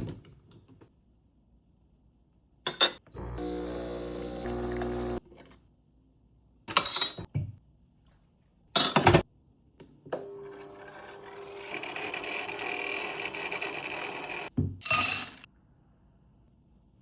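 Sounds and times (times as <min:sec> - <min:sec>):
machine humming and whirring: 0:03.2 - 0:05.2, 0:10.8 - 0:14.5.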